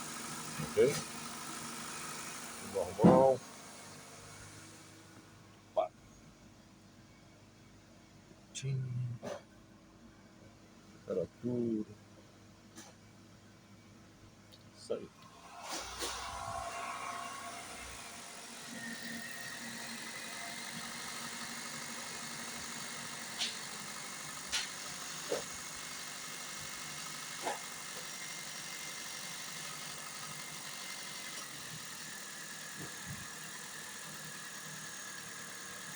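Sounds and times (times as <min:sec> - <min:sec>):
car engine idling: 0:00.0 - 0:05.9, 0:14.9 - 0:35.9.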